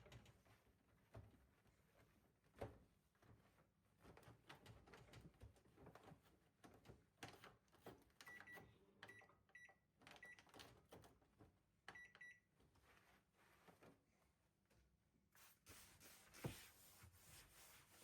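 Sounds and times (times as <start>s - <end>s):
faint clicks and handling knocks: 0.0s - 9.2s
appliance button beeps: 11.9s - 12.4s.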